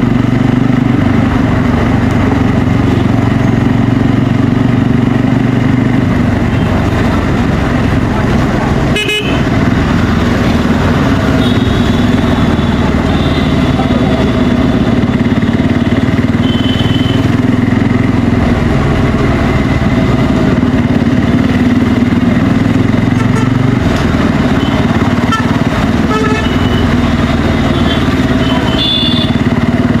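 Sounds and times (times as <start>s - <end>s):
motorcycle engine running: 0.0s - 30.0s
vehicle horn toots: 8.9s - 9.5s, 11.3s - 14.2s, 16.2s - 17.4s, 23.1s - 23.7s, 24.5s - 27.0s, 27.6s - 29.6s.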